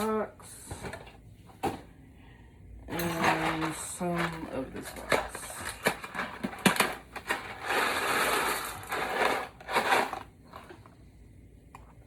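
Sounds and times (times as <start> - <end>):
dry pasta rattling from a box: 3.2 - 10.8.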